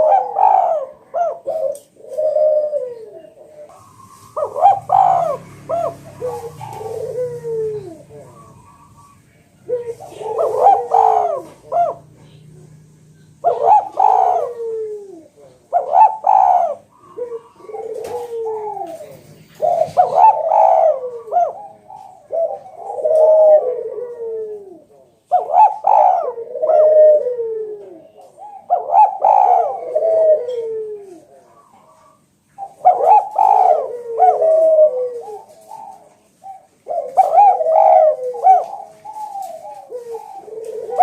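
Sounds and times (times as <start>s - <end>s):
dove cooing: 0.0s - 41.0s.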